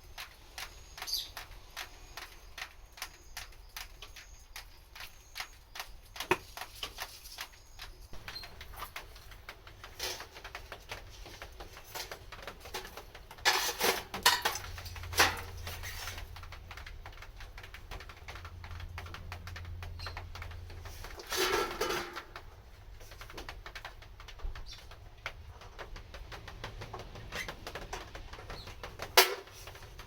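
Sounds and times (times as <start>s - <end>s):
wood fire crackling and popping: 0.0s - 30.0s.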